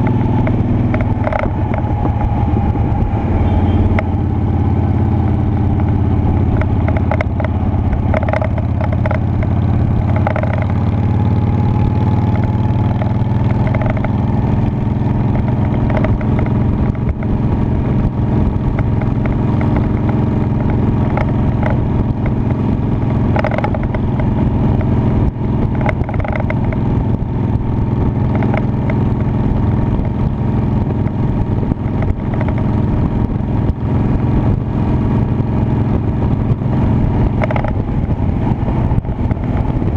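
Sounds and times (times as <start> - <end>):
knocks and rattles: 0.0 - 3.2, 3.9 - 10.8, 12.8 - 14.2, 15.4 - 17.4, 23.0 - 24.9, 25.6 - 26.9, 31.8 - 32.8, 37.3 - 38.2
motorcycle engine running: 0.0 - 39.9.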